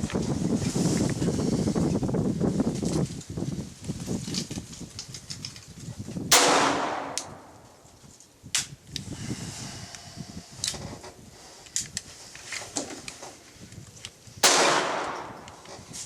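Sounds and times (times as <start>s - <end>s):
pistol shot ringing: 6.3s - 7.5s, 14.4s - 15.5s.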